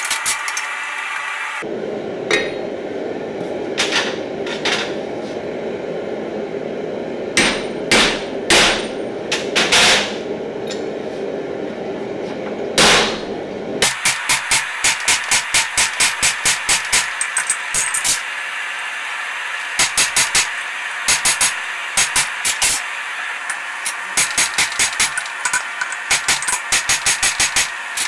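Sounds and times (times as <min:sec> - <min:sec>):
hammer striking steel on anvil: 0:02.3 - 0:02.7, 0:07.4 - 0:10.9, 0:12.8 - 0:18.2.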